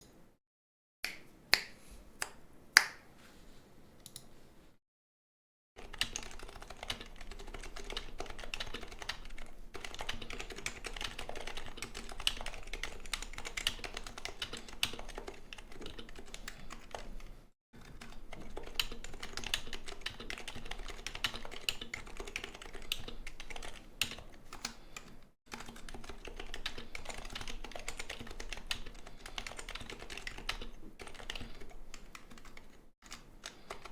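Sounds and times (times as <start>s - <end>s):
keyboard typing: 5.8s - 33.9s.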